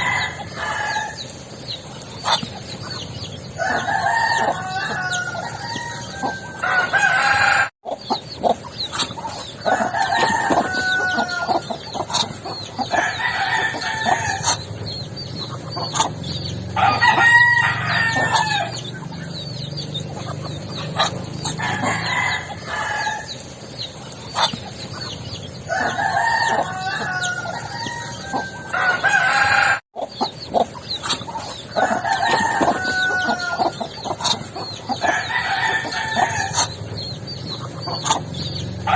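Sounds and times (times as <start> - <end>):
hens clucking: 0.0 - 38.9
roosters crowing: 0.0 - 38.9.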